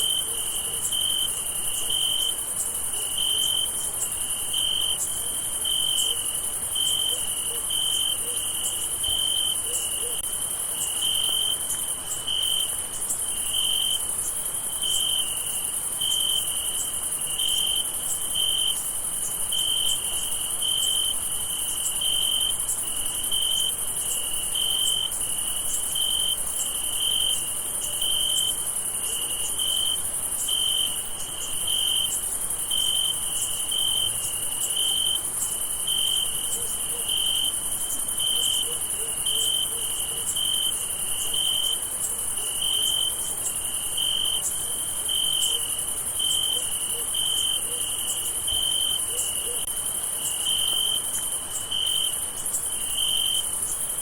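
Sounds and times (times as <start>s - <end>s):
crickets chirping: 0.0s - 54.0s.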